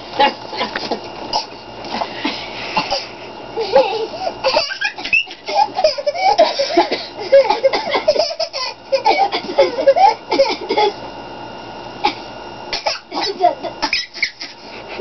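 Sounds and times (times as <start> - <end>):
girl laughing hysterically: 3.6 - 11.0, 13.7 - 14.6.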